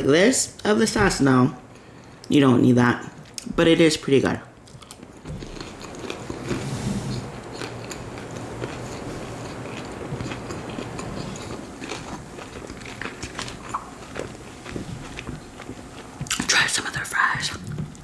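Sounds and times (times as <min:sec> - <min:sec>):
person chewing food: 0:04.6 - 0:16.5.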